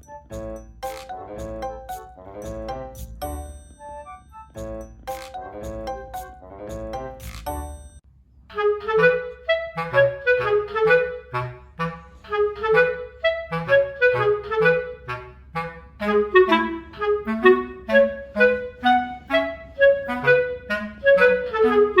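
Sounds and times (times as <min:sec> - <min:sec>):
staccato tune over bass line: 0:00.0 - 0:10.7.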